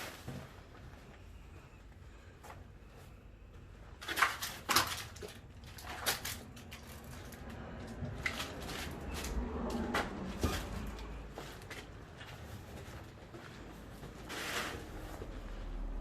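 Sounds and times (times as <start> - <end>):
low steady rumble: 5.6 - 16.0.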